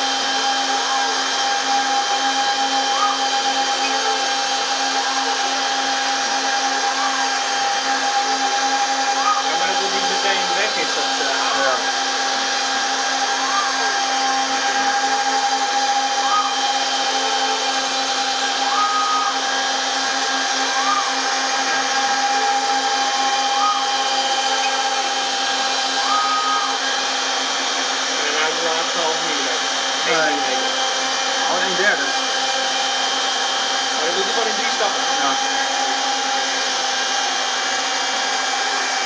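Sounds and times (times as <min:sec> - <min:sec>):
router spindle whine: 0:00.0 - 0:39.0
higher machine tone: 0:06.9 - 0:29.1.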